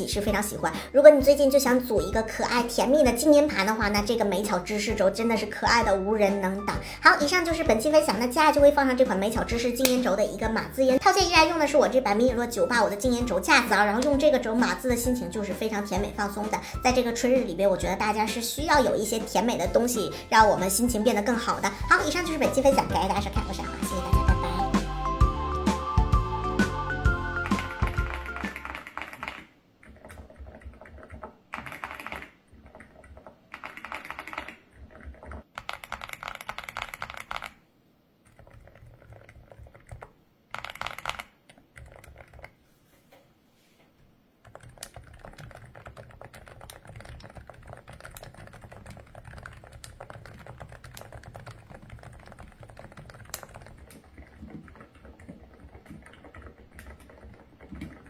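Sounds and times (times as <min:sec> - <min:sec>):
muffled keyboard keystrokes: 0:27.4 - 0:37.6, 0:38.2 - 0:42.6, 0:44.4 - 0:58.0.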